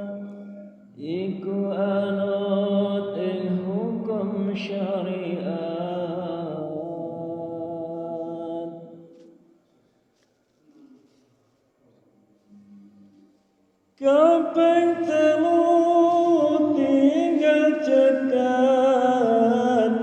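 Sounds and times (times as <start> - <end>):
man chanting: 0.0 - 9.0, 14.0 - 20.0.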